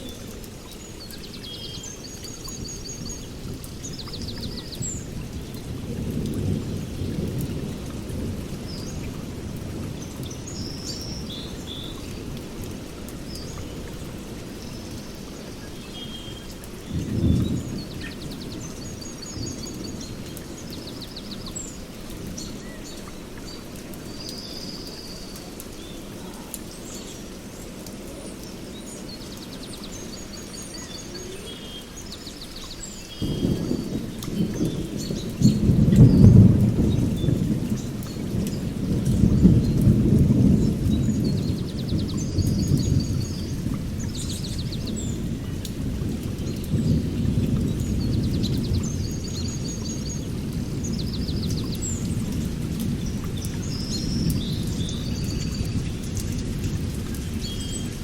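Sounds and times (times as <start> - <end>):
rain hissing: 0.0 - 58.0
thunder rumbling: 2.4 - 10.8, 16.8 - 22.7, 33.2 - 58.0.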